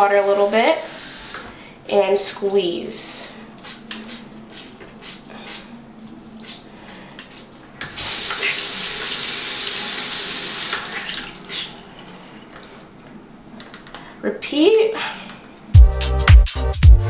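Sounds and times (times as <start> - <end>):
wet sponge squelching: 3.2 - 7.5.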